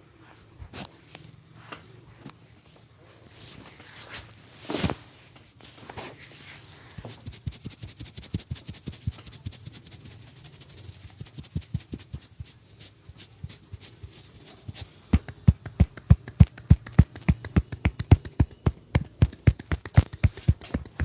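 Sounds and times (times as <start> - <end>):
light pats and rubbing on skin: 5.6 - 21.0
hands slapping skin: 7.2 - 21.0.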